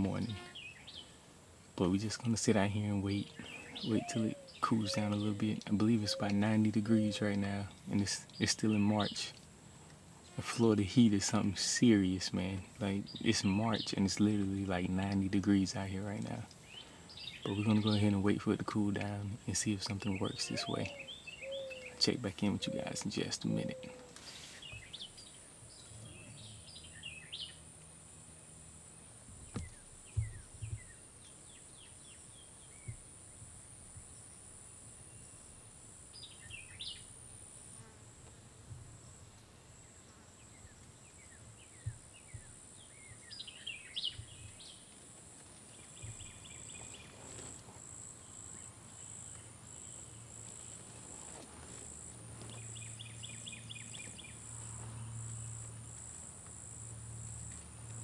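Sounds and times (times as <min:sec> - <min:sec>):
insects trilling: 0:02.2 - 0:09.3, 0:10.3 - 0:38.0
bird chirps: 0:03.1 - 0:09.3, 0:20.0 - 0:27.6.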